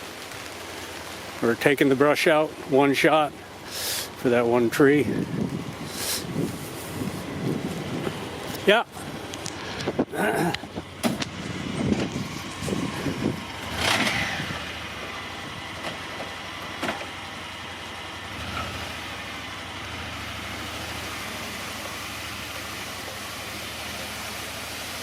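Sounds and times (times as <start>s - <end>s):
vehicle engine humming: 0.0s - 25.0s
clunks and rustles: 9.4s - 12.9s, 15.7s - 17.2s.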